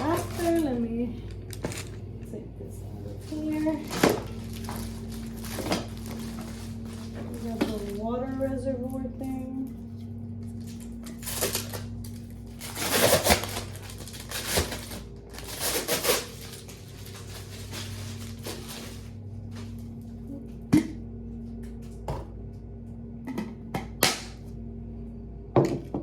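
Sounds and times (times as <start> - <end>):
packaging rustling: 0.0 - 2.1, 3.3 - 8.1, 10.6 - 19.8
low steady hum: 0.0 - 26.0.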